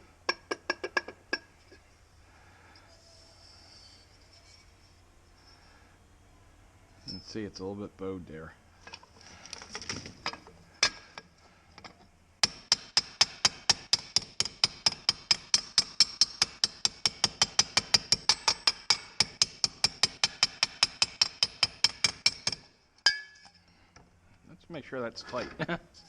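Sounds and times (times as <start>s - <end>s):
hammer tapping on metal: 12.4s - 23.4s.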